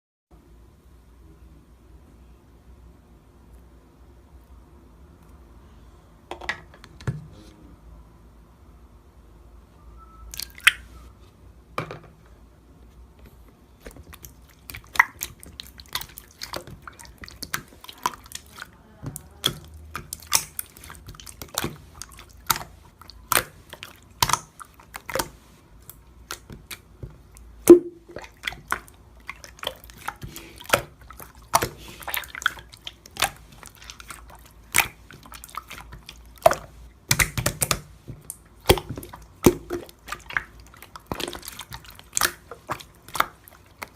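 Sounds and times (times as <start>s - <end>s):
slime wet popping clicks: 36.4s - 40.4s.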